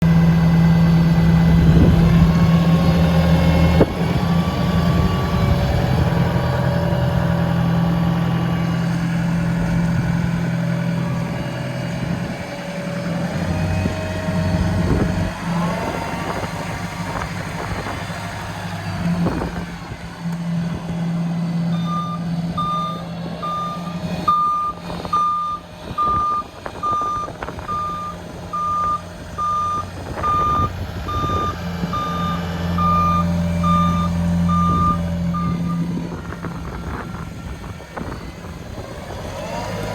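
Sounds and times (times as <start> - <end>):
diesel engine running: 0.0 - 39.9
reversing alarm beeping: 21.7 - 36.0.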